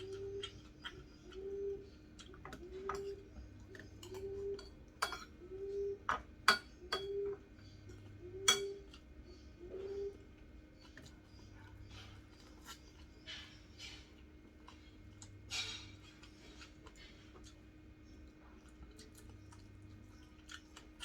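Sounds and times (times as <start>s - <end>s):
cutlery clinking against a dish: 2.5s - 5.4s, 8.4s - 9.0s.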